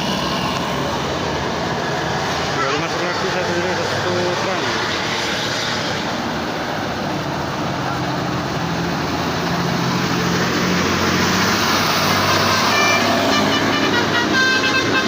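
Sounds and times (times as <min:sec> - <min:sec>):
heavy vehicle engine labouring: 0:00.0 - 0:15.0
multi-tone bus horn melody: 0:12.2 - 0:15.0.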